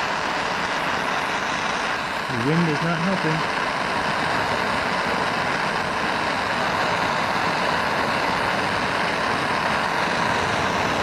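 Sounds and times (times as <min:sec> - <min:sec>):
gas torch flame hissing: 0:00.0 - 0:11.0.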